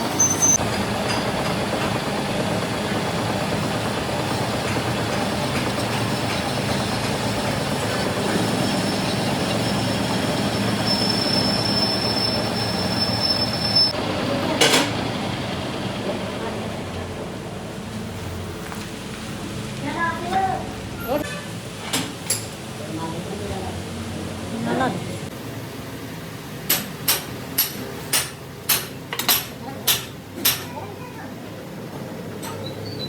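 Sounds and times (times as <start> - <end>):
thin high squeal: 0.0 - 0.6, 8.6 - 14.0
heavy machinery noise: 0.0 - 33.0.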